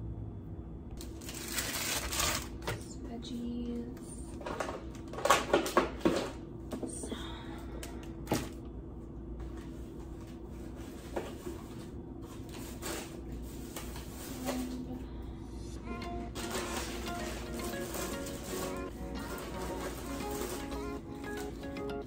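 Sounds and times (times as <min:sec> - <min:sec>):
soft background music: 0:14.5 - 0:22.0.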